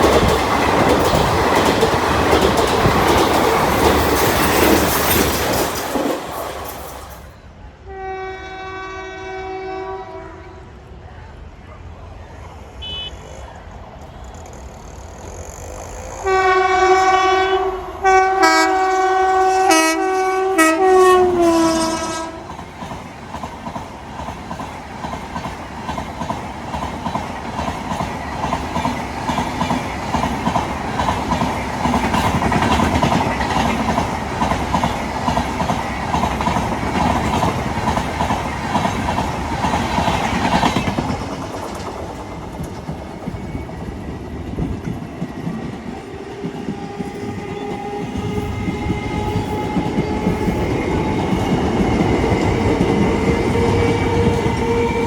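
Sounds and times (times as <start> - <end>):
wheels clattering over rail joints: 0.0 - 7.3
train rumbling past: 0.0 - 55.0
train horn blasts: 7.8 - 10.8, 12.8 - 13.4, 16.2 - 22.5.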